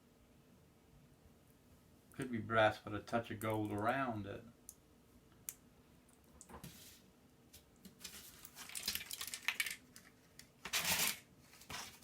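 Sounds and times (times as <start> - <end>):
crinkly rustling: 7.9 - 12.0.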